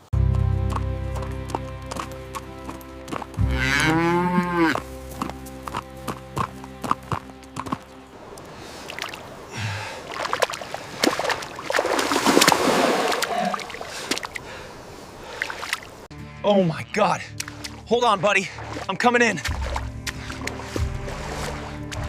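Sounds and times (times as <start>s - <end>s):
background music: 0.0s - 8.2s, 16.1s - 22.0s
cow mooing: 3.4s - 4.9s.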